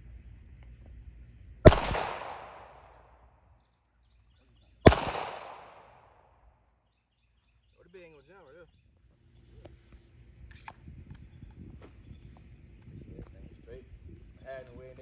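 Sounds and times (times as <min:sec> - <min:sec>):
gunshots with echo: 0:01.6 - 0:03.0, 0:04.9 - 0:06.2.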